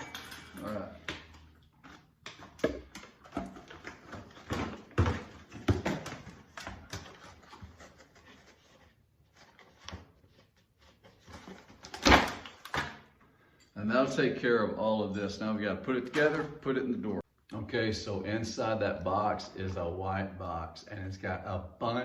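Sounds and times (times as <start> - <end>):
box and hardware rustling: 0.0 - 12.8.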